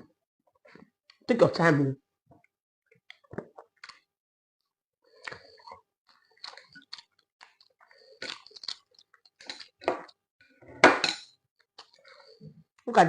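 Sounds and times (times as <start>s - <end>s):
person chewing wetly: 5.0s - 10.2s.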